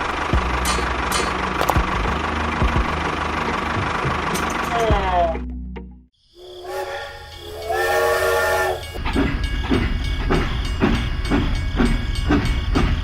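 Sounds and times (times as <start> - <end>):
locomotive chuffing: 0.0 - 5.3, 6.4 - 13.0
steam train whistle: 6.4 - 9.0.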